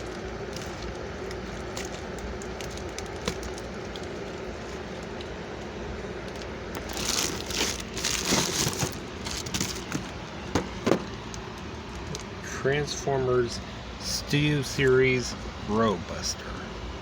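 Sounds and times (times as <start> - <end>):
packaging crinkling and rustling: 0.0 - 12.4
steady background hum: 0.0 - 17.0.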